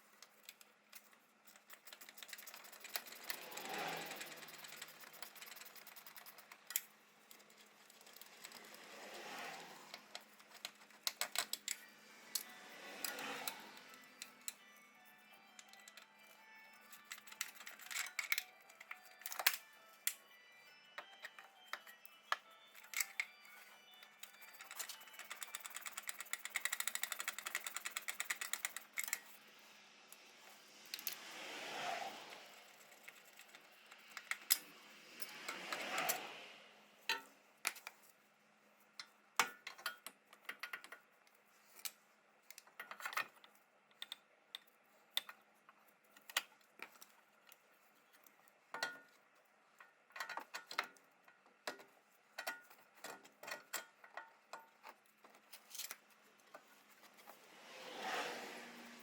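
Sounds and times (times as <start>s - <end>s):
metal scraping: 1.6s - 14.8s, 24.2s - 37.4s.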